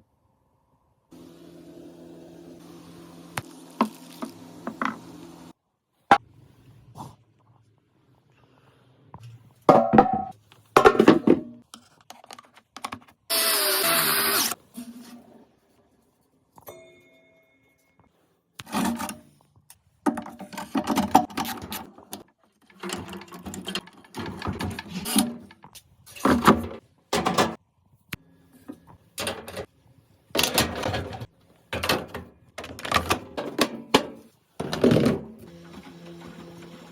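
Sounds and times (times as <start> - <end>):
tools clattering on metal parts: 20.1 - 27.6, 29.2 - 29.7.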